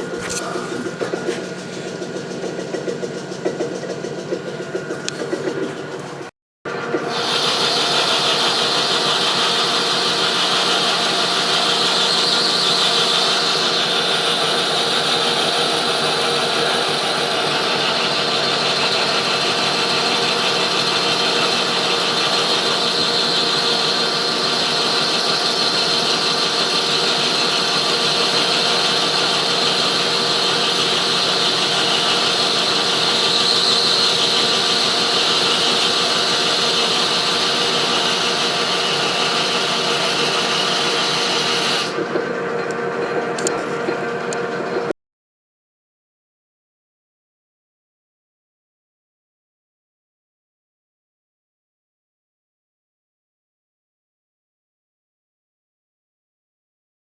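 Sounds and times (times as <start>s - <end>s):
metal lathe whining: 0.0s - 44.9s.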